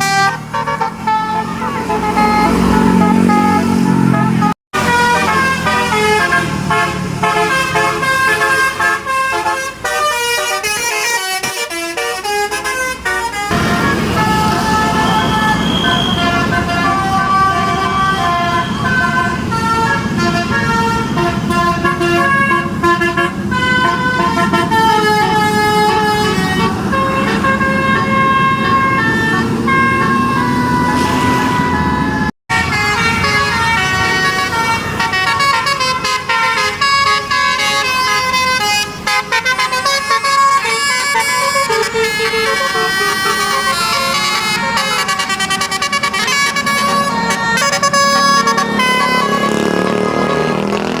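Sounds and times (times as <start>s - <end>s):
bus air horns playing melody: 0.0s - 51.0s
bus engine: 0.0s - 51.0s.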